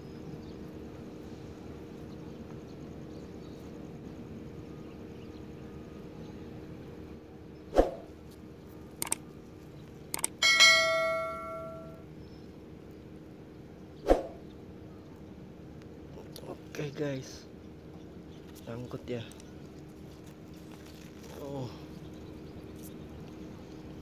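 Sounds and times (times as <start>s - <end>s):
steady low hum: 0.0s - 24.0s
metal object ringing: 10.4s - 12.0s.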